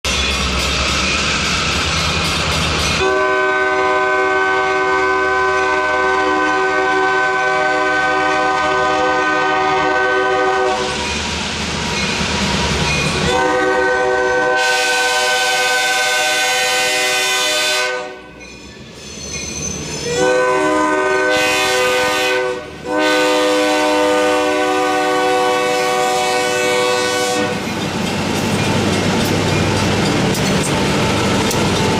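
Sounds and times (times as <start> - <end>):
train rumble: 0.0 - 31.9
locomotive air horn blasts: 3.0 - 11.1, 13.2 - 18.4, 20.0 - 27.6
wheel clatter on rails: 27.6 - 31.9.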